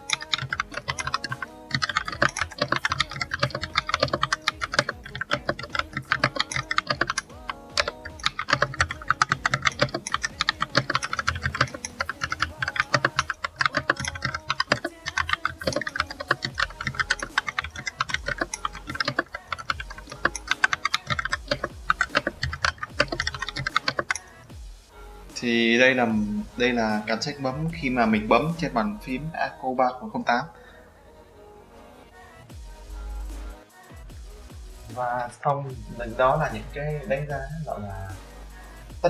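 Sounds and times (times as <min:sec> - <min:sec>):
mechanical keyboard typing: 0:00.0 - 0:24.3.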